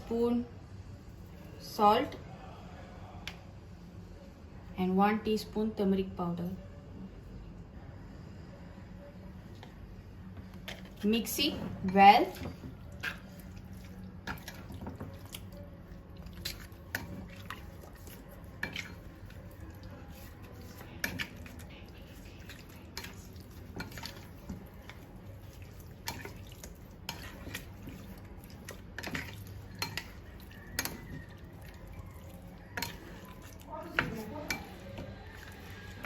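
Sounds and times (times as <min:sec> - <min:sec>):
wet mixing sounds: 0:10.5 - 0:36.0
light clicks and knocks against bowl: 0:26.0 - 0:36.0.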